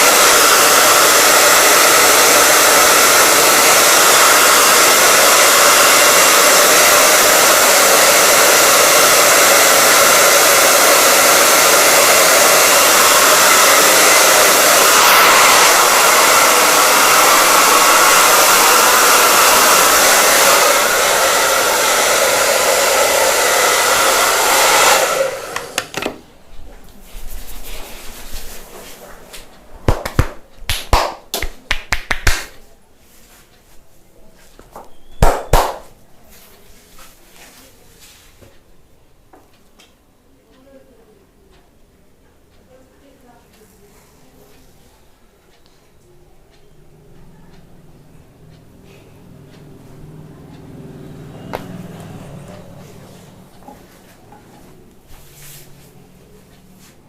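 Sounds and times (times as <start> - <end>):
hair dryer blowing: 0.0 - 26.2, 50.8 - 53.8.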